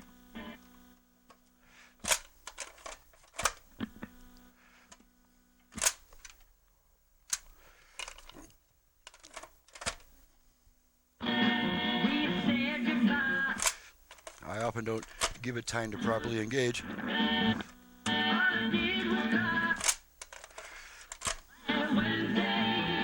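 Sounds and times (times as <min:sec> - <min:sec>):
faint steady hum: 0:00.0 - 0:23.0
cartridge clicks and clunks: 0:02.0 - 0:06.5, 0:07.3 - 0:10.1, 0:13.5 - 0:15.4, 0:19.7 - 0:21.5
music playing: 0:11.2 - 0:13.6, 0:16.0 - 0:19.8, 0:21.6 - 0:23.0.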